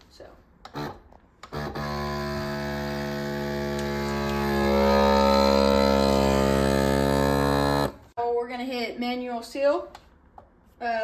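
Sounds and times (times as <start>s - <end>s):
vacuum sealer pump humming: 1.8s - 8.1s.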